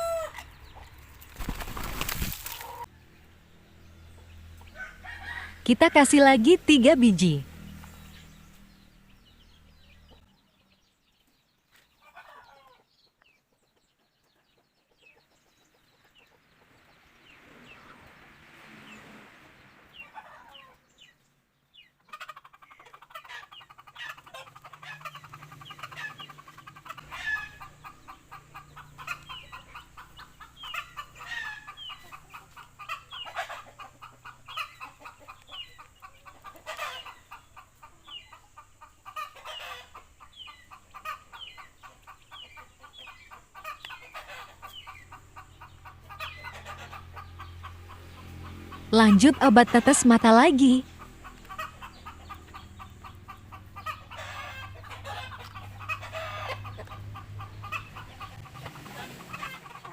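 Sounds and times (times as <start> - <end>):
fowl clucking and chirping: 0.0 - 7.4, 9.3 - 16.9, 20.0 - 59.9.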